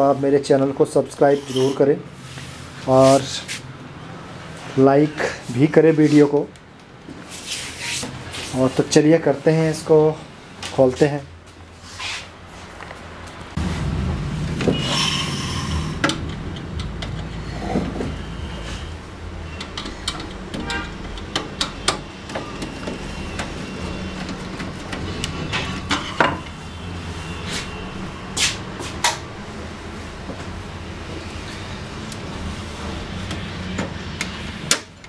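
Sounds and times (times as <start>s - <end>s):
low hum: 13.6s - 19.0s.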